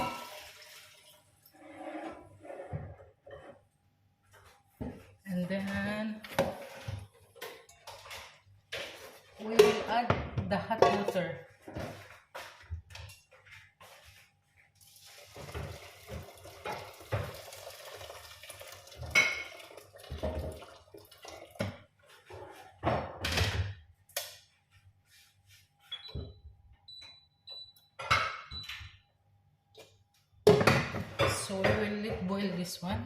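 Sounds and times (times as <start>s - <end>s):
hot water pouring into pot: 0.0s - 1.3s, 14.8s - 21.7s
pots and utensils clattering: 6.3s - 10.1s, 18.9s - 23.7s.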